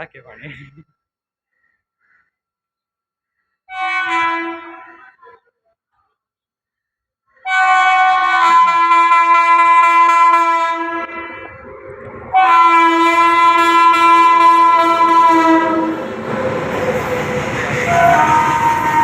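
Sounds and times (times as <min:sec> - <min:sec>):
locomotive air horn blast: 0:03.7 - 0:05.1, 0:07.4 - 0:11.2, 0:12.3 - 0:16.2, 0:17.1 - 0:19.0
train rumbling and clattering: 0:11.0 - 0:19.0.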